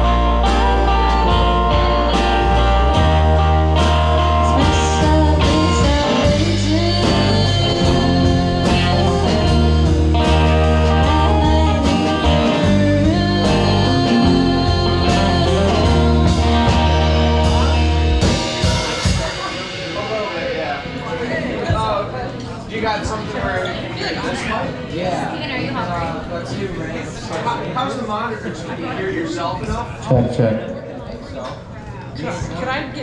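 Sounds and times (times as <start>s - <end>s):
electric guitar: 0.0s - 21.8s
rock band playing blues: 0.0s - 22.4s.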